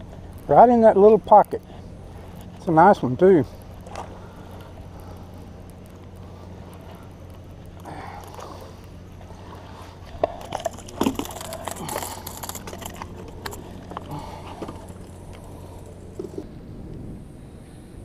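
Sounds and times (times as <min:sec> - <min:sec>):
low steady hum: 0:00.0 - 0:18.0
knocks and clicks handling fish: 0:10.1 - 0:15.4.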